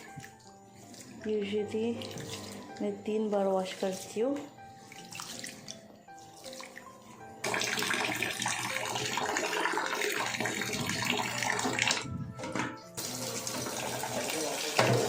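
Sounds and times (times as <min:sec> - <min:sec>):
faint background music: 0:00.0 - 0:15.0
tap water running into pot: 0:07.4 - 0:12.0, 0:13.0 - 0:15.0.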